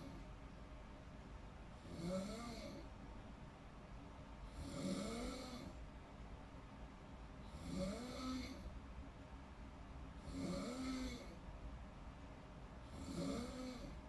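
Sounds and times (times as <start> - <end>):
person snoring: 1.8 - 2.8, 4.5 - 5.7, 7.5 - 8.6, 10.2 - 11.4, 12.9 - 14.0.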